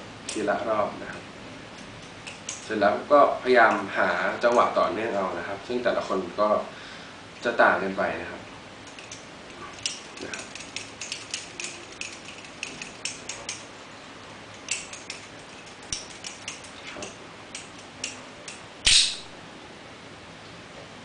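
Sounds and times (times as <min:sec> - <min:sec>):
butterfly knife trainer clicking: 0:08.9 - 0:13.7, 0:14.5 - 0:19.2.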